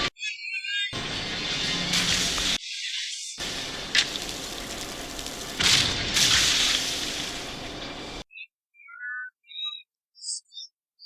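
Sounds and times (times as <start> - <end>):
cartoon blast rushing hiss: 3.4 - 7.9.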